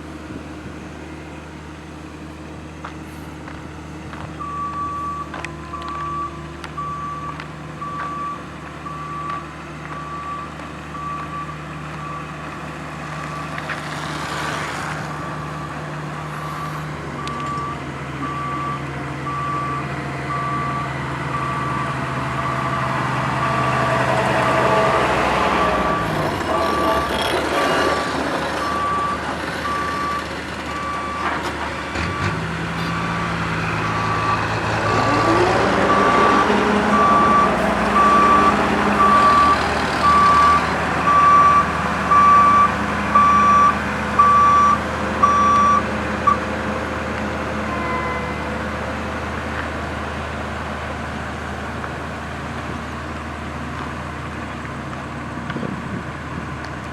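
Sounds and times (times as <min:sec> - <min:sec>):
diesel engine running: 0:00.0 - 0:56.9
reversing alarm beeping: 0:04.4 - 0:12.4, 0:15.1 - 0:31.4, 0:33.8 - 0:46.5.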